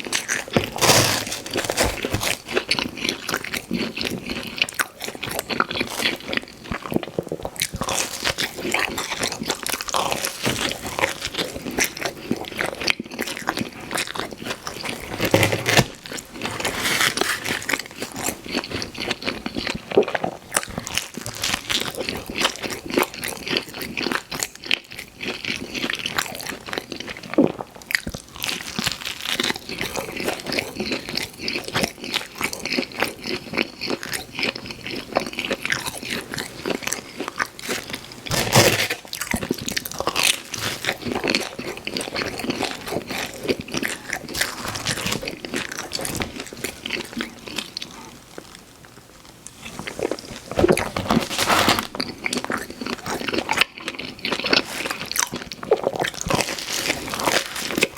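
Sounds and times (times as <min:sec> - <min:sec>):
crunching: 0:00.0 - 0:12.5, 0:49.5 - 0:57.9
pizza being chewed: 0:00.0 - 0:57.9.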